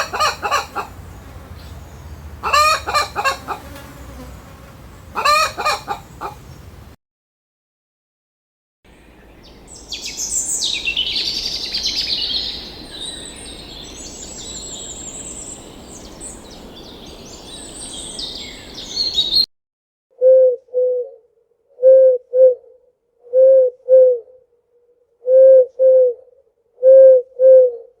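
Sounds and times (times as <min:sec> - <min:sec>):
bird low paired hoots: 0:00.0 - 0:01.1, 0:05.1 - 0:06.6, 0:20.2 - 0:24.5, 0:25.2 - 0:28.0
background hiss: 0:00.0 - 0:07.0
songbirds chirping: 0:00.0 - 0:07.0, 0:08.9 - 0:19.5.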